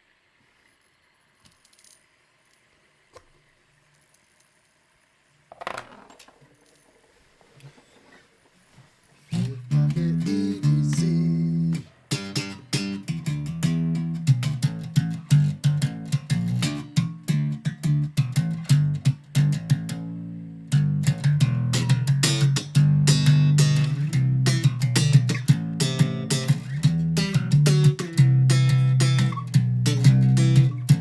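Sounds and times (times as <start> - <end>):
plucked guitar: 9.3 - 31.0
bass line: 9.4 - 31.0.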